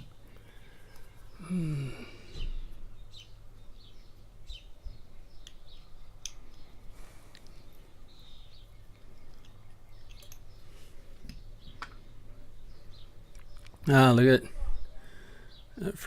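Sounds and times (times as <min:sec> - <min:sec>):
person grunting: 0:01.4 - 0:02.3.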